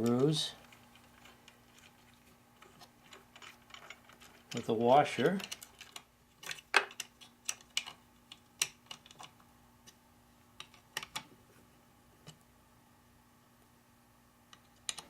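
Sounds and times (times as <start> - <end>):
small hardware clicking and tapping: 14.5 - 15.0.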